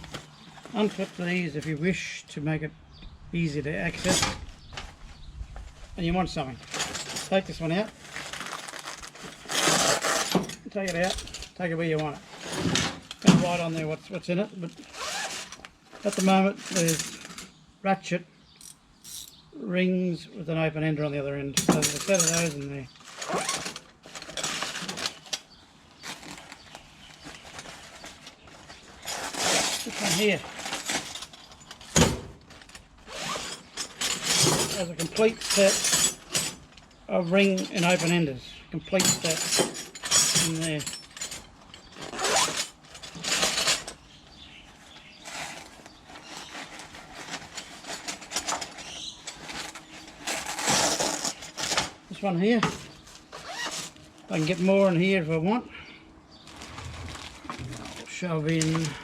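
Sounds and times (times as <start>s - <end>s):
metal spanners clinking: 9.6s - 11.6s, 16.0s - 17.4s, 18.6s - 19.4s, 21.6s - 22.8s, 32.7s - 36.7s, 37.4s - 44.0s
zip rasping: 14.8s - 15.6s, 33.1s - 33.5s
cloth rustling: 56.4s - 58.1s.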